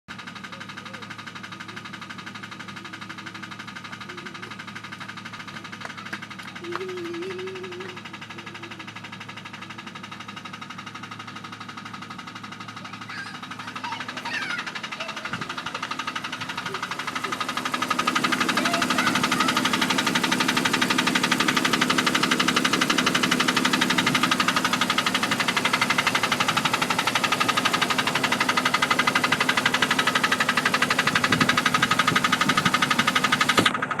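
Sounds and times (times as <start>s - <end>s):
engine idling with rapid ticking: 0.1s - 34.0s.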